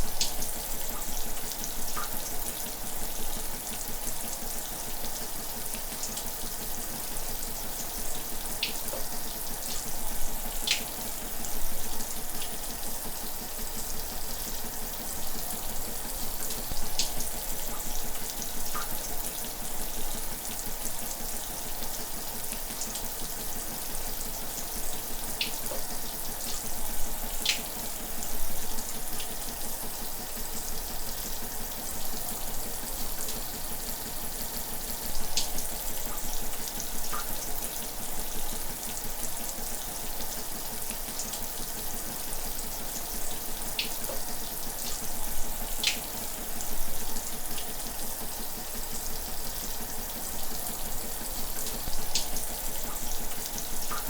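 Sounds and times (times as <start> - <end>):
shower running: 0.0 - 54.0.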